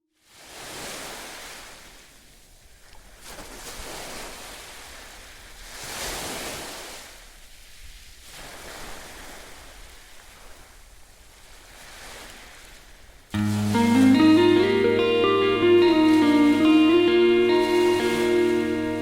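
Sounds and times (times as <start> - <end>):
sea waves washing in: 13.4 - 19.0.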